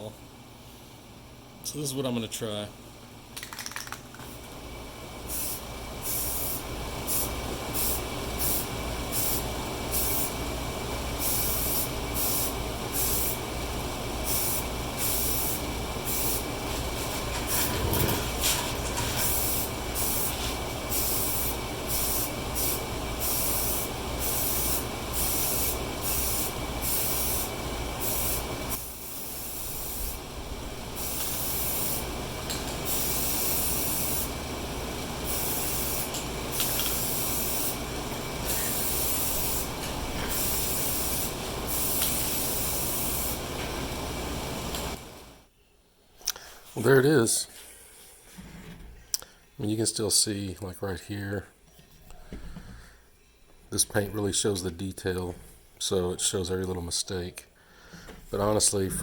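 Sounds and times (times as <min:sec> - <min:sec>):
steady low hum: 0:00.0 - 0:47.6
spray can hissing in bursts: 0:05.3 - 0:10.4, 0:11.2 - 0:13.5, 0:14.2 - 0:17.7, 0:18.3 - 0:34.3, 0:35.2 - 0:43.6.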